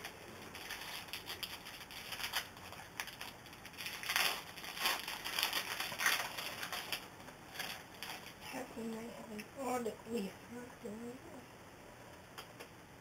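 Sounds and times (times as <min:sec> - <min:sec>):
card pack wrapper crinkling: 0:00.0 - 0:08.4.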